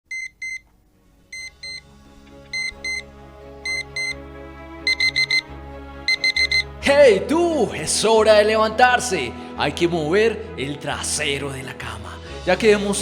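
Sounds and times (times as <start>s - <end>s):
alarm clock double beeps: 0.1s - 0.6s, 1.4s - 1.8s, 2.5s - 4.2s, 4.9s - 5.5s, 6.1s - 6.7s
soft background music: 0.1s - 13.0s.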